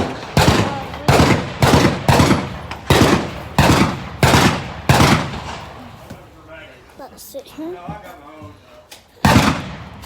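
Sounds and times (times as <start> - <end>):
gunshots: 0.0 - 6.0, 9.2 - 10.0.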